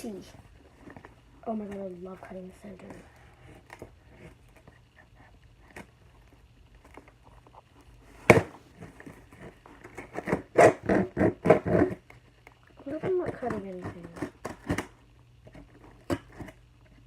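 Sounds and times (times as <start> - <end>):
knife cutting cardboard and tape: 8.2 - 12.0.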